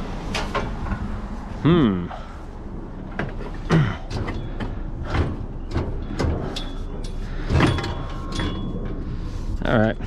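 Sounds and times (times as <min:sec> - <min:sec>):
steady low rumble: 0:00.0 - 0:10.0
scrap metal knocks and clanks: 0:03.1 - 0:09.2.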